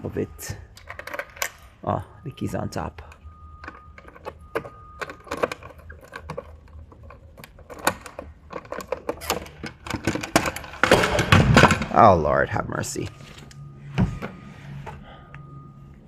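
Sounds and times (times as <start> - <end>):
key jangling and clicking in lock: 0.8 - 1.6, 3.6 - 10.8.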